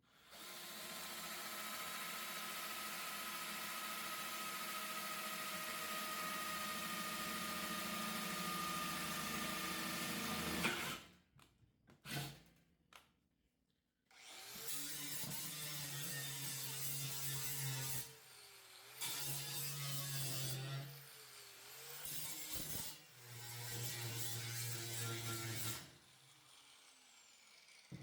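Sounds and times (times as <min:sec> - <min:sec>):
handheld power tool running: 0:00.3 - 0:11.0.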